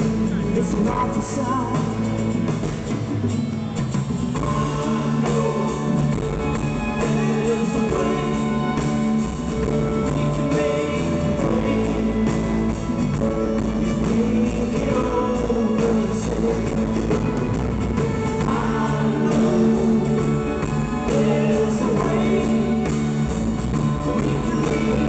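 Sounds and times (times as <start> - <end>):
person singing: 0.0 - 2.4, 4.4 - 25.0
strummed acoustic guitars: 0.0 - 25.0.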